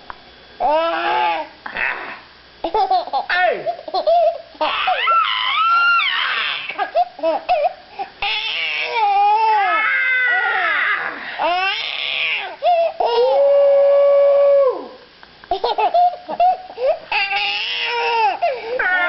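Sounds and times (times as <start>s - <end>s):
baby crying and shrieking: 0.6s - 1.5s, 4.6s - 13.5s, 17.1s - 19.0s.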